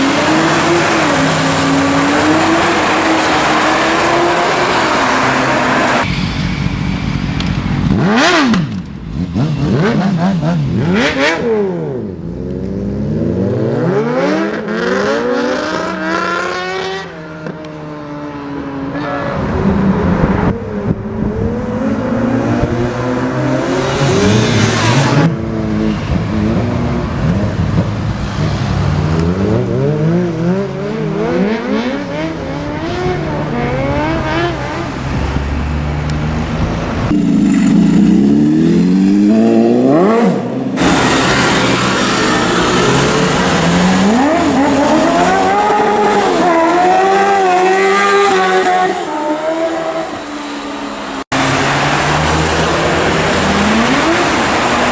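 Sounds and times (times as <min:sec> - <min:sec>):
motorcycle engines revving: 0:00.0 - 0:27.8, 0:28.7 - 0:54.9.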